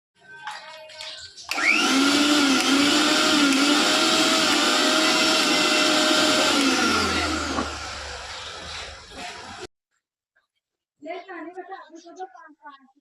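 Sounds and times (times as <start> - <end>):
mixer grinder motor running: 1.5 - 9.7.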